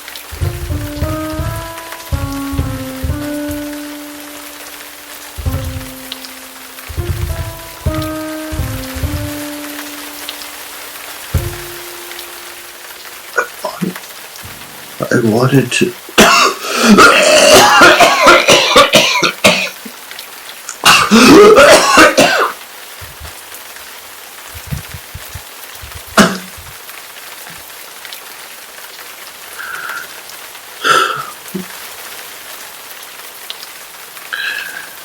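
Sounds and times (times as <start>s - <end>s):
steady rain: 0.0s - 35.0s
man coughing hard: 16.2s - 19.7s, 20.9s - 22.5s.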